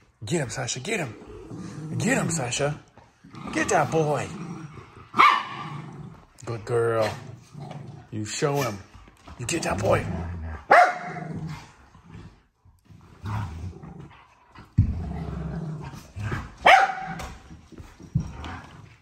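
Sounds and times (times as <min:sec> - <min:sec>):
dog growling: 0:00.8 - 0:19.0
dog barking sharply: 0:05.2 - 0:05.5, 0:10.7 - 0:11.2, 0:16.7 - 0:17.1.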